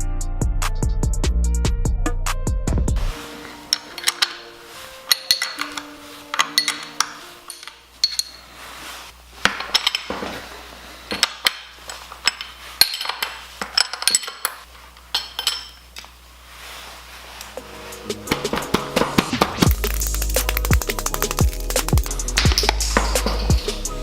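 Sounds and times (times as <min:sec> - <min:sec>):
metal tools clinking: 0:03.3 - 0:08.6, 0:09.4 - 0:10.3, 0:11.1 - 0:16.0, 0:22.4 - 0:23.8.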